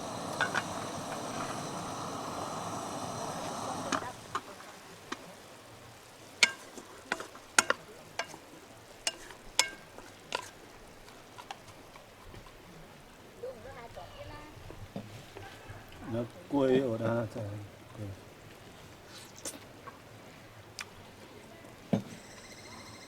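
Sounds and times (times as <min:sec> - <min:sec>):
food sizzling in a pan: 0:00.0 - 0:11.3.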